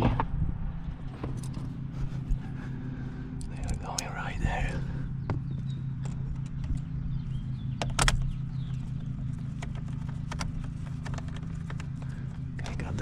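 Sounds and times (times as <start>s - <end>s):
low hum: 0.0s - 13.0s
clicks and taps of driver and bolts: 5.2s - 6.9s, 7.8s - 8.8s, 9.5s - 12.8s.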